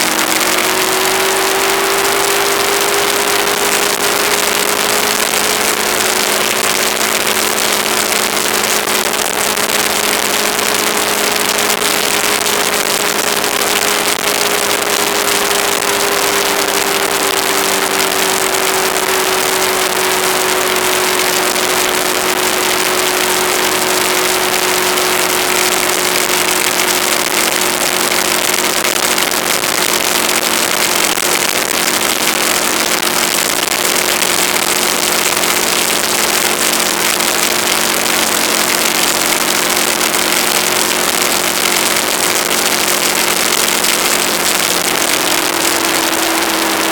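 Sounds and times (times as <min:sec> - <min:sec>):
motorcycle engine cruising: 0:00.0 - 0:46.9.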